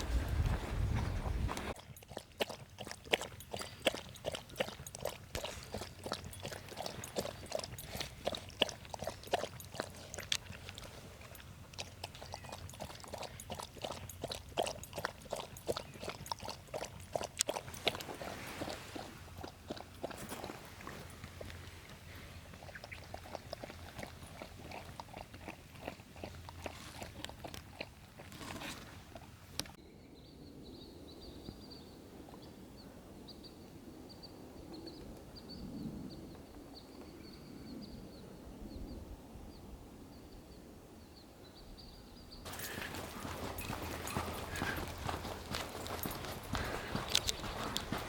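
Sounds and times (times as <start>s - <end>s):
wind rumble on microphone: 0.0s - 1.8s, 30.2s - 42.0s
footsteps crunching on gravel: 42.5s - 48.0s.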